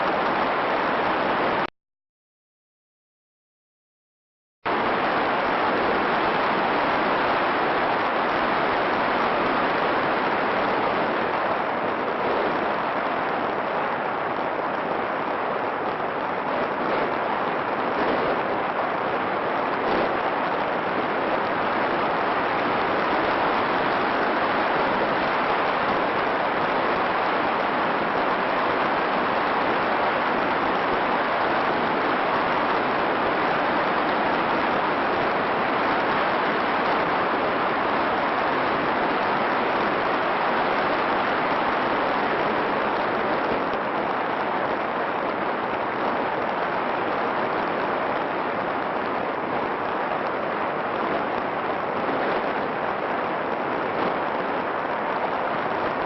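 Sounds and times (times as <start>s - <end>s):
static hiss: 0.0s - 1.7s, 4.7s - 56.0s.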